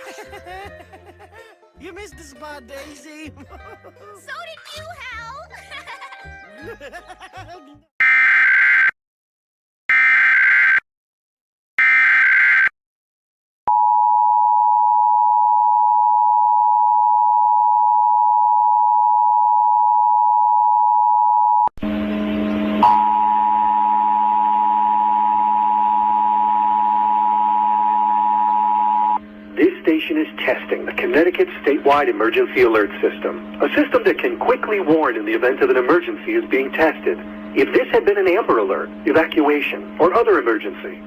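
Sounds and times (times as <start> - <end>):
low steady hum: 21.8 - 41.0
two-tone attention signal: 22.5 - 29.3
harsh data bursts: 28.9 - 41.0.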